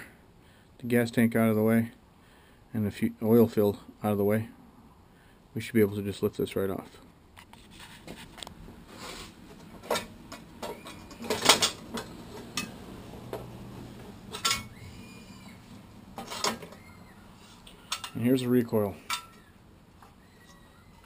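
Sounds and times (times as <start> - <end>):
metal cover clanking and rattling: 9.7 - 12.8, 14.3 - 14.8, 16.2 - 16.8, 17.8 - 18.2, 19.0 - 19.4.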